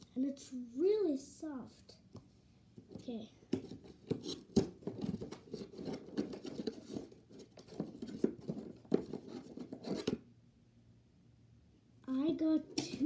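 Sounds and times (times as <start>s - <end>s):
hands rummaging in cardboard box: 3.6s - 10.2s.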